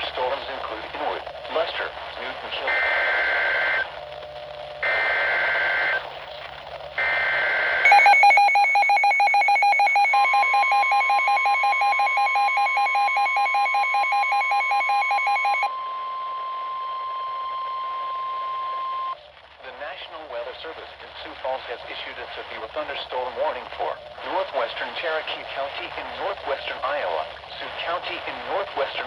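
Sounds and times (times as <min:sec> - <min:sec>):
rapidly pulsing electronic alarm beep: 0:07.0 - 0:15.7
steady warning alarm tone: 0:07.0 - 0:15.7.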